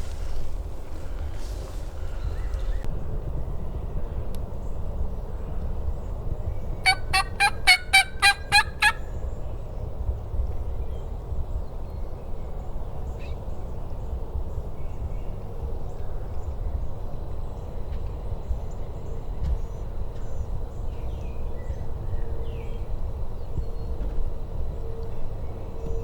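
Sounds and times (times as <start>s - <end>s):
turkey gobbling: 6.8s - 9.0s.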